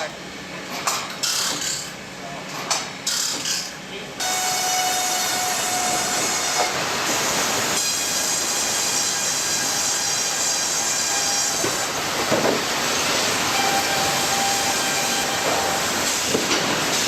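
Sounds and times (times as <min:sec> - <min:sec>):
high steady machine whine: 0:03.0 - 0:17.0
sawmill machinery din: 0:04.2 - 0:17.0
brief machine squeals: 0:13.5 - 0:15.8.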